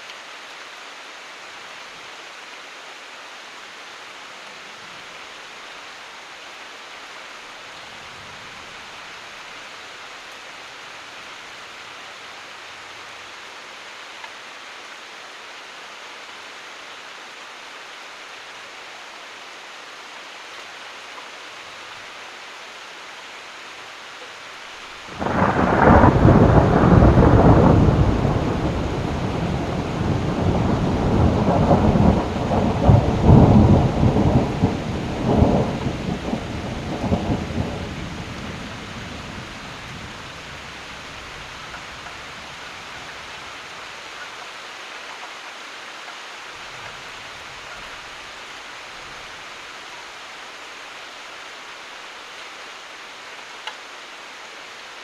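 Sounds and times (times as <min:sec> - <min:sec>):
heavy rain: 0:00.0 - 0:55.0
thunder rumbling: 0:25.1 - 0:43.3.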